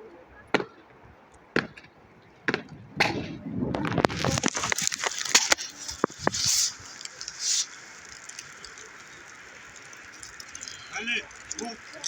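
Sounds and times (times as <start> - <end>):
hiss: 4.2 - 12.0.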